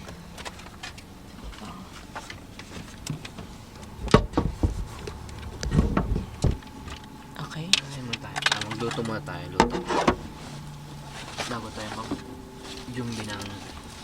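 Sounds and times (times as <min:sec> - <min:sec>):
objects knocking and clattering: 0:00.0 - 0:07.1
low background hum: 0:00.0 - 0:14.0.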